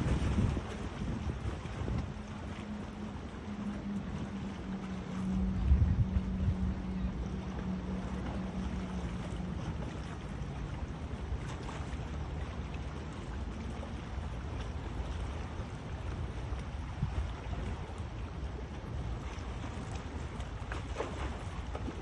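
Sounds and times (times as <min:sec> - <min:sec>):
wind blowing across microphone: 0:00.0 - 0:10.2, 0:15.1 - 0:22.0
faint steady hum: 0:00.0 - 0:22.0.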